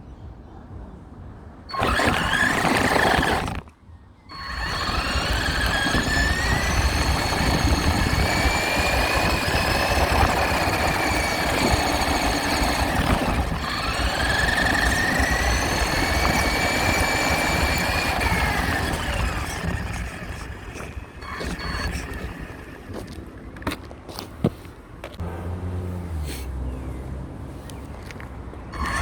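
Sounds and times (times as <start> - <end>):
rc truck motor whining: 1.7 - 3.7, 4.3 - 23.4, 28.7 - 29.0.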